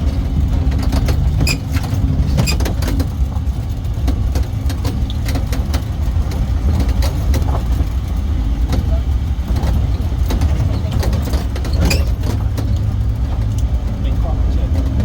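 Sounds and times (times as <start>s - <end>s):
vehicle engine rumble: 0.0s - 15.0s
light rattling clicks: 0.1s - 15.0s.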